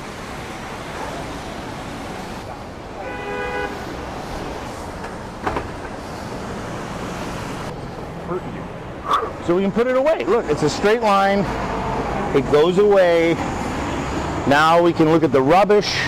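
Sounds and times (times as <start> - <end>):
street traffic: 0.0 - 16.0
car horn honk: 3.0 - 3.8.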